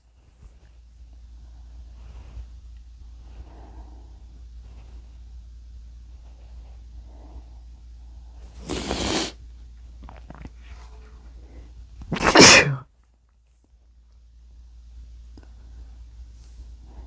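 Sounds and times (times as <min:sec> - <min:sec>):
person sneezing: 0:08.6 - 0:09.4, 0:12.1 - 0:12.9.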